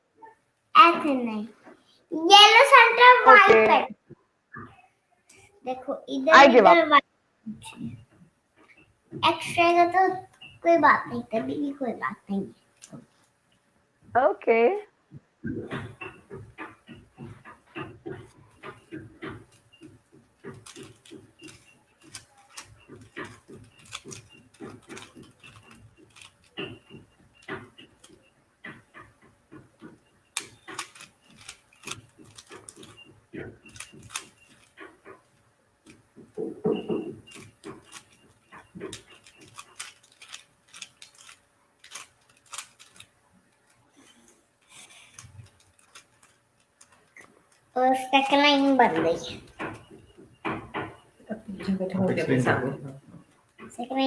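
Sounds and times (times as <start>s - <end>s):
puzzle cube clicking: 20.4s - 28.2s, 30.4s - 35.0s, 35.9s - 47.7s.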